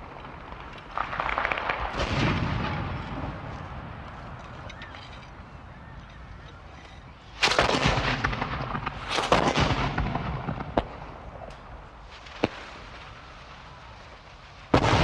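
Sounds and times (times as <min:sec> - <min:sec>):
gunshots with echo: 0:07.4 - 0:11.3.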